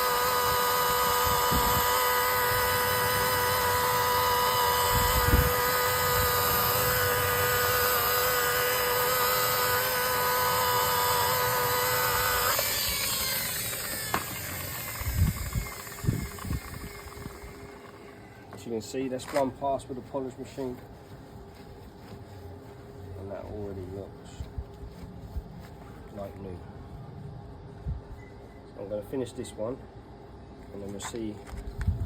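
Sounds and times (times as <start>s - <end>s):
polishing machine whine: 0.0s - 18.5s.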